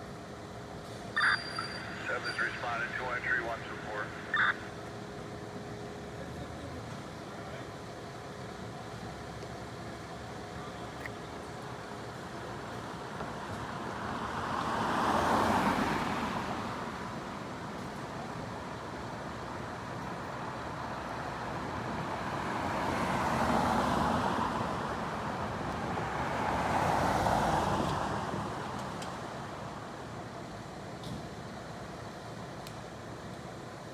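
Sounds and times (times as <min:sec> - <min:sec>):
road vehicles passing: 0:01.2 - 0:05.4, 0:08.0 - 0:18.2, 0:20.6 - 0:30.6.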